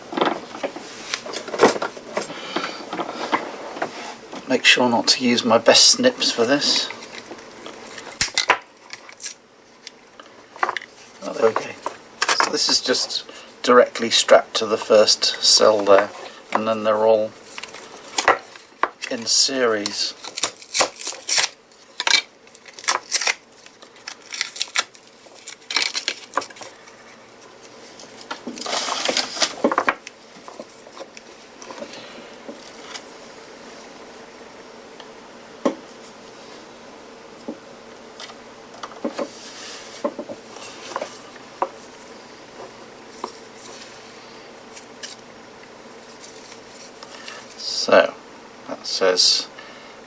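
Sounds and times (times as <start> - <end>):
scraping rustle: 23.9 - 34.1.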